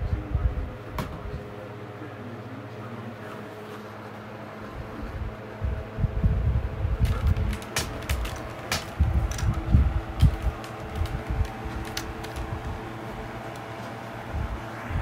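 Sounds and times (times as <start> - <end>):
electric fan humming: 0.0 - 15.0
sharp irregular clicks: 7.0 - 13.8.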